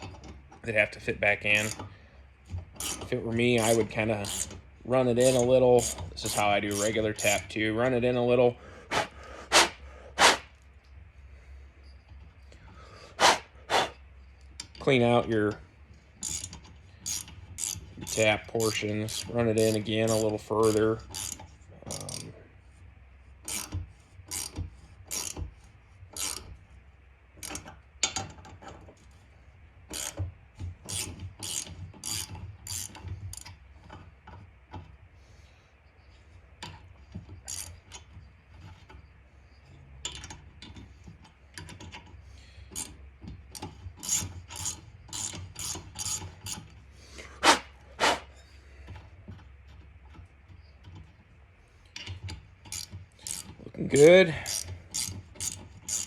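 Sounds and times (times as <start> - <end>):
ratchet handle clicking: 1.4 - 7.6, 16.2 - 22.3, 23.4 - 26.6, 27.4 - 29.1, 29.9 - 35.0, 36.6 - 39.0, 40.0 - 46.8, 51.8 - 56.0.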